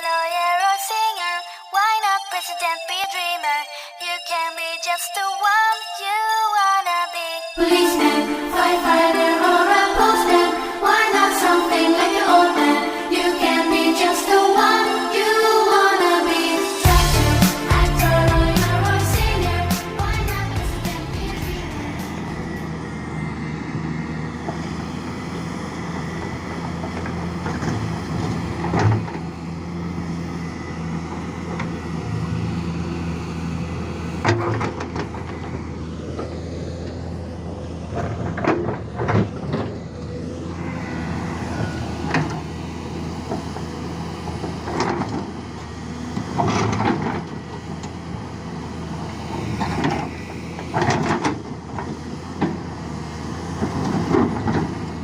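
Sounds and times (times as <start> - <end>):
excavator diesel engine running: 7.6 - 55.0.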